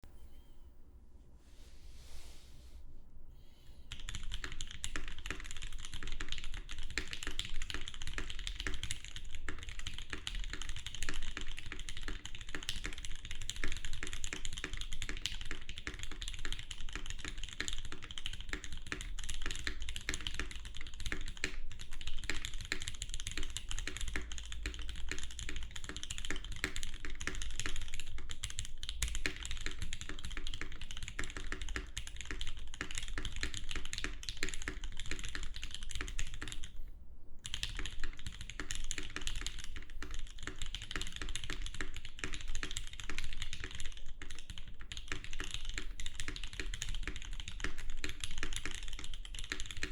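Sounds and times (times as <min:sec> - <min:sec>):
mechanical keyboard typing: 0:03.9 - 0:36.8, 0:37.4 - 0:49.9.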